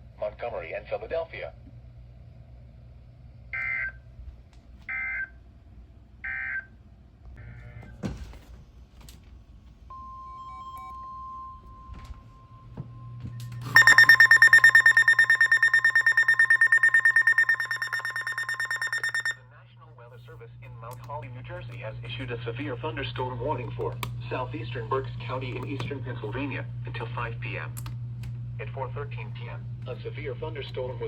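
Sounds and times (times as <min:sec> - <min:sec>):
harsh pulsing alarm tone: 0:13.8 - 0:19.4
steady warning alarm tone: 0:13.8 - 0:19.4
warbling digital data bursts: 0:13.8 - 0:19.4.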